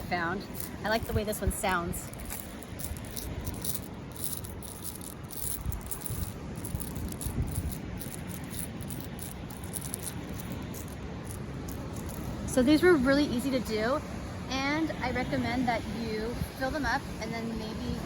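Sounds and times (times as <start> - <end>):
stones rattling in plastic bottle: 0.4 - 1.4, 2.1 - 12.4.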